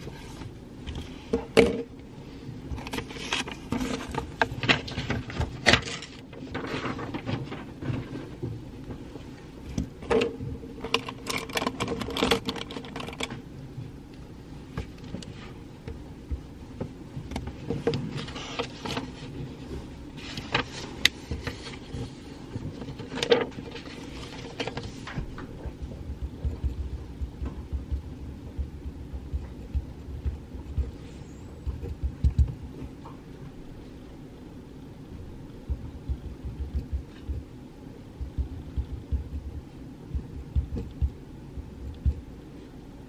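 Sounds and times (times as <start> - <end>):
steady low hum: 0.0 - 43.0
low rumble: 23.6 - 43.0.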